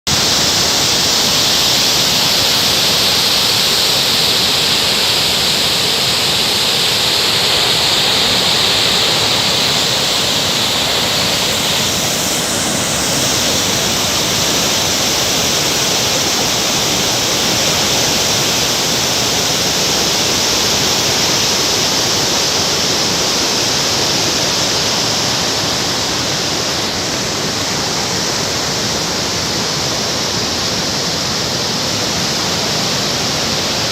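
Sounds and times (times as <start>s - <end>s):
waterfall rushing: 0.0s - 33.9s.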